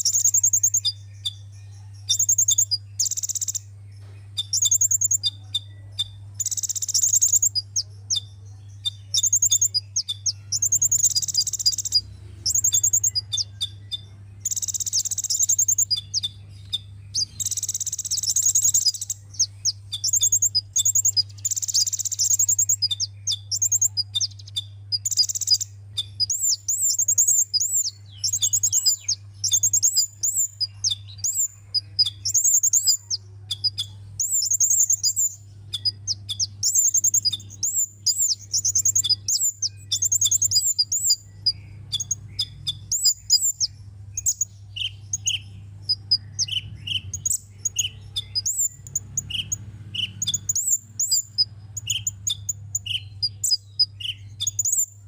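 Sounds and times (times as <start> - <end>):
bird twittering chirps and trills: 0.0 - 55.0
steady low hum: 0.0 - 55.0.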